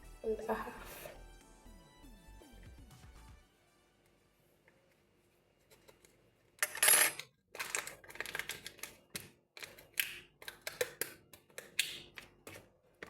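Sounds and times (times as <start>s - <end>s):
spoon clicking against tins and bowls: 6.6s - 12.6s.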